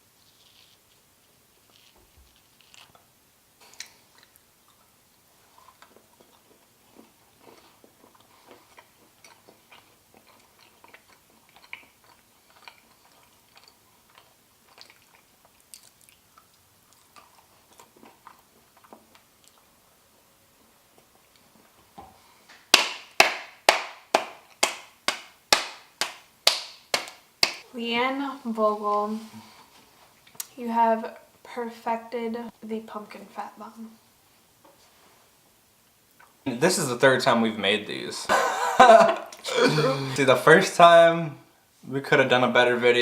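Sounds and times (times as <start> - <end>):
people chewing and biting: 0.4 - 23.8.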